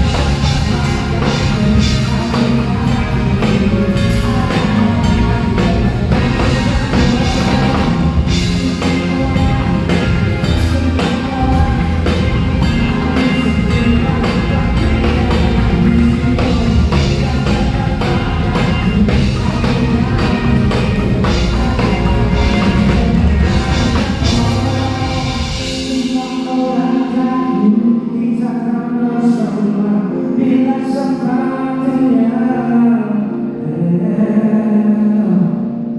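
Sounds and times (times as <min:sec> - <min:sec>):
heavy bass line: 0:00.0 - 0:26.1
drum kit hits: 0:00.0 - 0:26.4
live band playing: 0:00.0 - 0:27.7.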